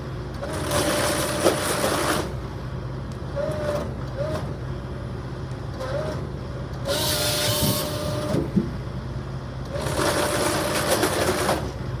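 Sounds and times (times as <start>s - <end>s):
diesel engine drone: 0.0s - 12.0s
hydraulic chainsaw cutting logs: 0.4s - 2.4s, 9.7s - 11.8s.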